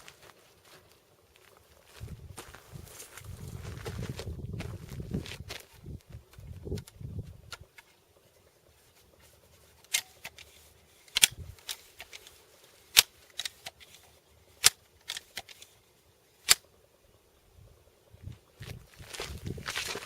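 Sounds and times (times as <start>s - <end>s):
bb gun clicks: 9.9s - 10.5s, 11.1s - 14.0s, 14.6s - 15.7s, 16.4s - 16.7s.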